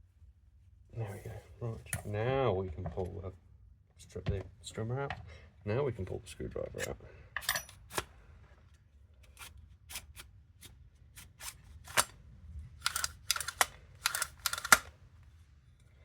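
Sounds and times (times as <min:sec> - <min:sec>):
recoil starter metallic clicks: 0:12.8 - 0:14.9.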